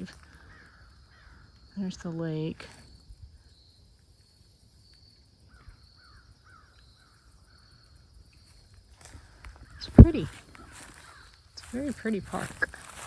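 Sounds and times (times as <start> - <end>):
faint bird chirps: 0.0 - 13.0
faint high insect trill: 0.0 - 13.0.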